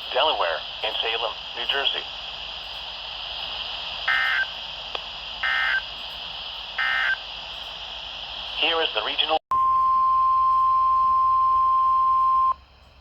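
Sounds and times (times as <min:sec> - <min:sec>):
steady radio hiss: 0:00.0 - 0:09.4
short digital data bursts: 0:04.0 - 0:04.6, 0:05.4 - 0:05.9, 0:06.8 - 0:07.3.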